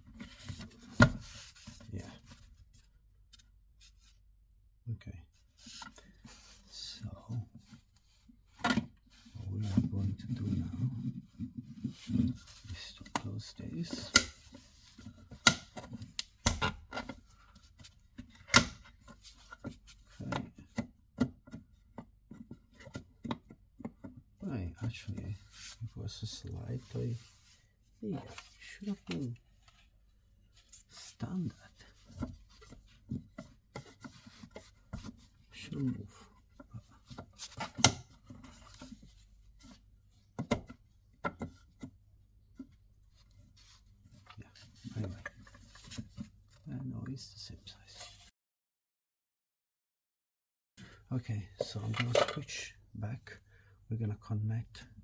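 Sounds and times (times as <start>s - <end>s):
plastic wall socket clicks and knocks: 18.4s - 18.9s.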